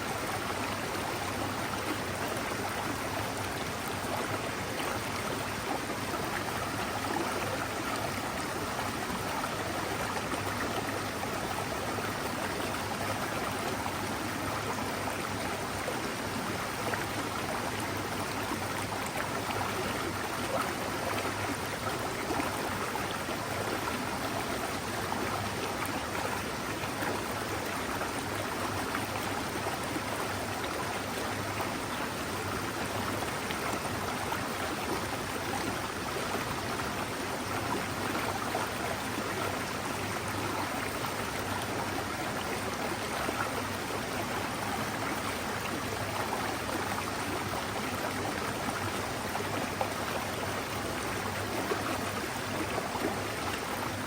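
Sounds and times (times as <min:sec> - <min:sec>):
stream water rushing over rocks: 0:00.0 - 0:54.0.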